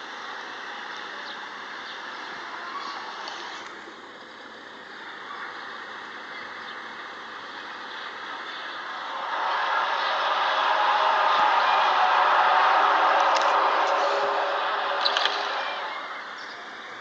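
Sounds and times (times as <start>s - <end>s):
hissing drone wavering in pitch: 8.3s - 17.0s.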